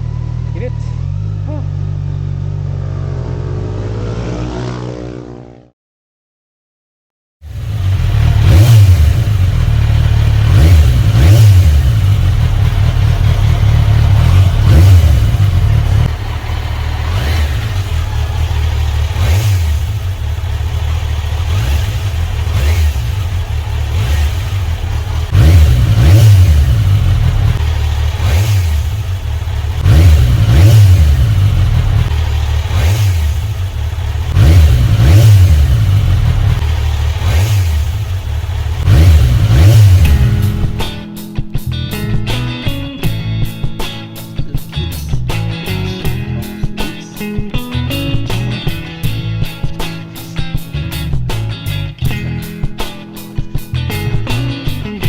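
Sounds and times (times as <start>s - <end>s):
motorcycle engine idling: 0.0s - 2.8s, 7.5s - 41.0s.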